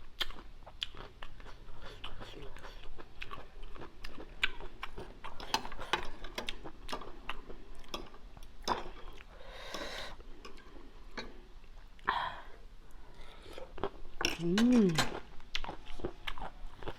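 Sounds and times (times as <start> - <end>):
wet chewing: 0.2 - 9.3
breathy hiss: 9.3 - 10.3.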